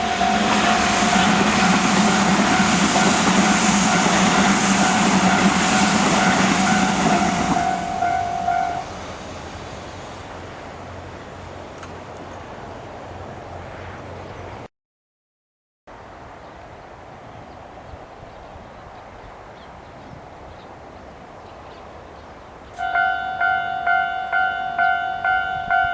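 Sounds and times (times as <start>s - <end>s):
level crossing warning bell: 0.0s - 9.3s, 22.8s - 25.9s
passing train rumble: 0.0s - 10.6s, 16.0s - 25.9s.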